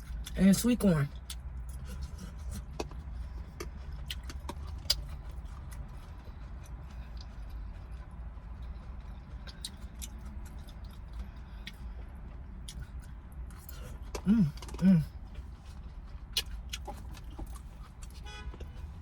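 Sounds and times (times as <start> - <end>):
mouth clicks while eating: 1.2 - 5.9
car interior hum: 2.4 - 19.0.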